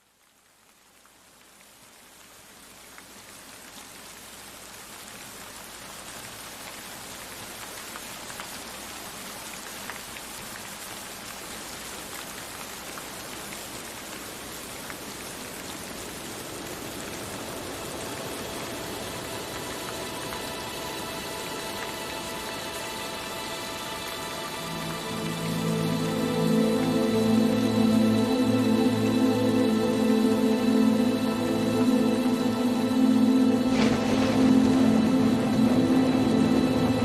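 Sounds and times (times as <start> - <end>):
rain falling: 0.0 - 37.0
raindrops ticking: 0.0 - 37.0
soft sustained music tones: 16.3 - 37.0.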